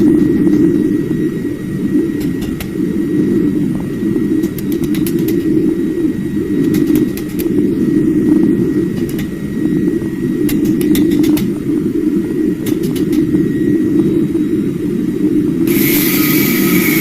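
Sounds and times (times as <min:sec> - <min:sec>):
sharp ticks: 0:04.4 - 0:05.6, 0:06.6 - 0:07.6, 0:09.0 - 0:09.3, 0:10.4 - 0:11.5, 0:12.6 - 0:13.3.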